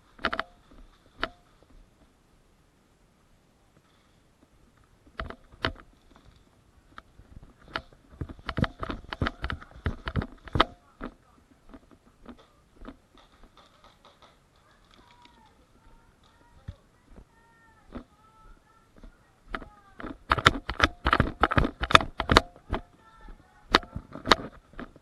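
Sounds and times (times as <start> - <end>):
faint clicks: 3.8 - 24.4.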